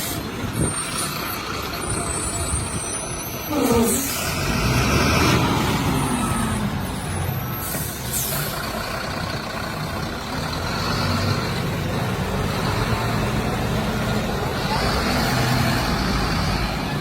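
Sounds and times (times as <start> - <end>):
diesel truck engine running: 0.0 - 17.0.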